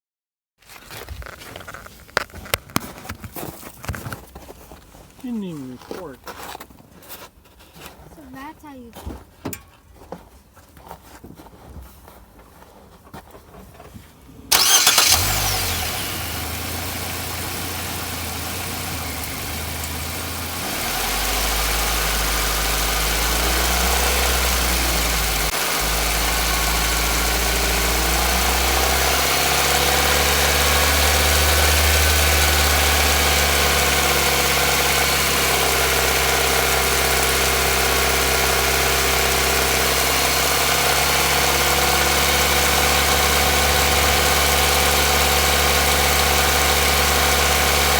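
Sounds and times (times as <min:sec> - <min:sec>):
car engine starting and idling: 0:14.5 - 0:47.9.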